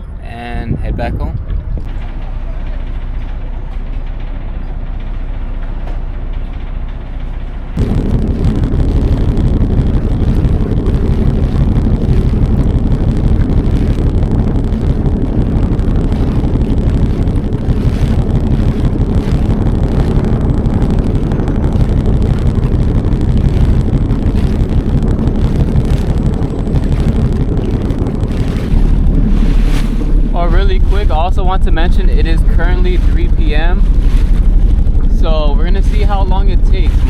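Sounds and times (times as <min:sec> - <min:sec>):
wind buffeting microphone: 0:00.0 - 0:37.0
jet ski engine running: 0:07.8 - 0:37.0.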